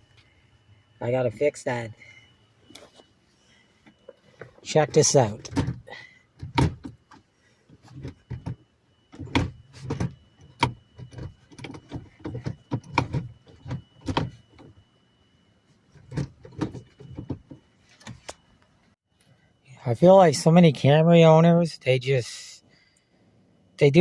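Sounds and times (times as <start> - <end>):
mechanical clicks and clunks: 3.9 - 14.8, 16.0 - 18.4.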